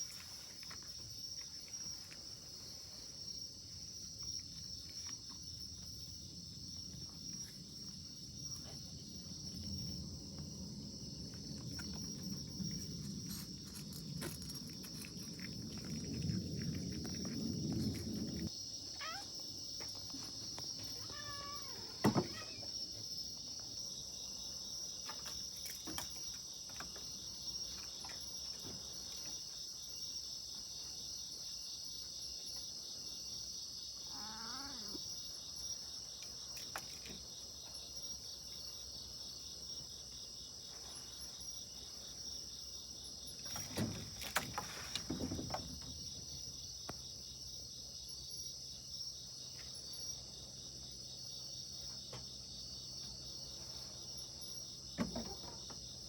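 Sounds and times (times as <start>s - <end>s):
insects chirping: 0.0s - 56.0s
cat meowing: 18.9s - 19.3s, 20.9s - 22.6s.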